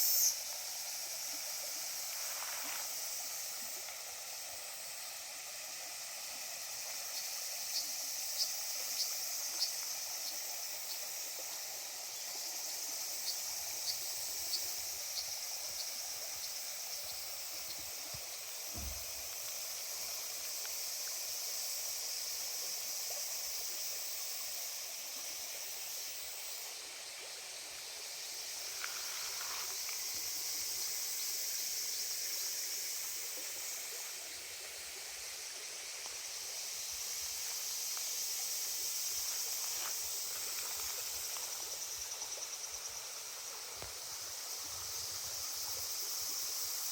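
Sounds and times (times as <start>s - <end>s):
cicadas buzzing: 0.0s - 46.9s
low thump: 18.7s - 19.2s.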